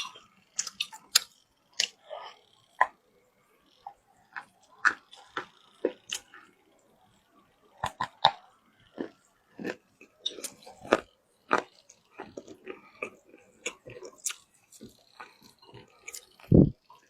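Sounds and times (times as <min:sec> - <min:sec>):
person crunching and chewing: 0:00.0 - 0:03.0, 0:03.8 - 0:06.5, 0:07.7 - 0:17.0.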